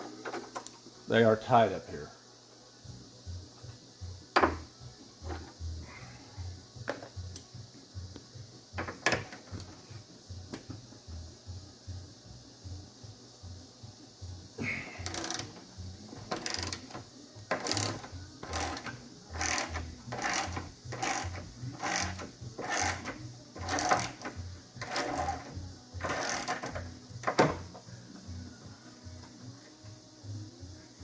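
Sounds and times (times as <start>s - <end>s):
ratchet wrench clicking: 15.0s - 27.5s.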